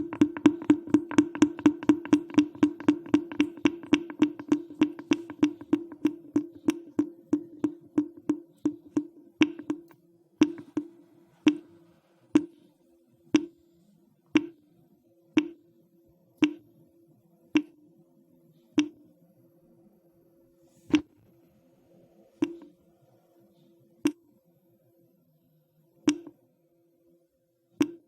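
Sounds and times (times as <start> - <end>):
water dripping into a drain: 0.0 - 11.6, 12.4 - 12.6.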